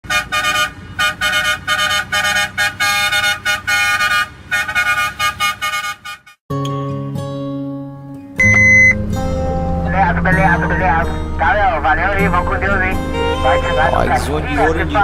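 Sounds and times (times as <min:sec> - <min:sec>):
engine rumbling: 0:00.0 - 0:05.9, 0:08.4 - 0:15.0
truck horn blasts: 0:00.0 - 0:06.4, 0:08.4 - 0:11.4.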